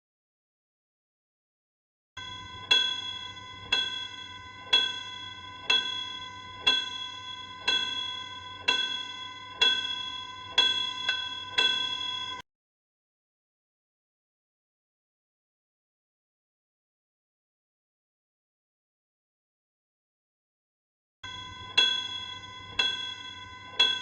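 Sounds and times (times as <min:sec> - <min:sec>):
bell ringing: 0:02.2 - 0:12.4, 0:21.2 - 0:24.0.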